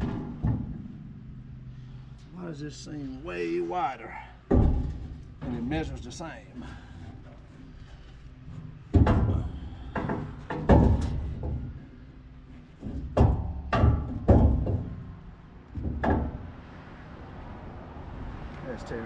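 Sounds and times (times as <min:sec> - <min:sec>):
metal toolbox banging: 0:08.9 - 0:11.6, 0:12.9 - 0:15.0.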